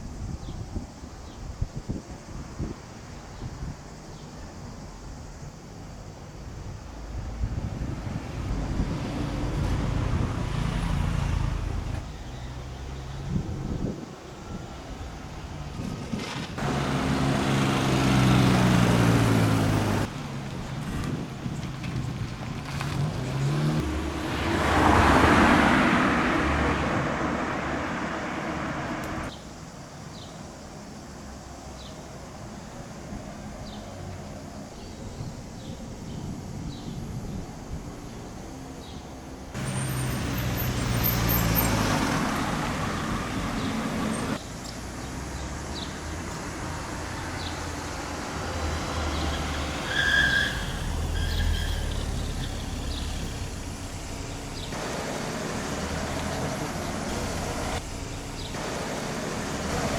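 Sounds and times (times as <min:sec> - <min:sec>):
quiet street background: 0:00.0 - 0:59.9
car passing: 0:06.6 - 0:13.7, 0:14.4 - 0:29.3, 0:39.5 - 0:59.9.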